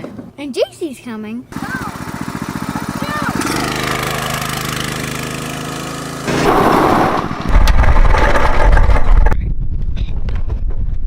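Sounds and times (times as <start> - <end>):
vehicle engine running: 1.5 - 7.5.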